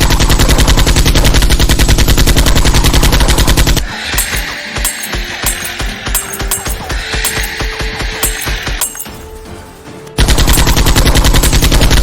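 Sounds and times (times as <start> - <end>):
rapid automatic gunfire: 0.0 - 8.9, 10.2 - 12.0
background music with steady beat: 4.0 - 12.0.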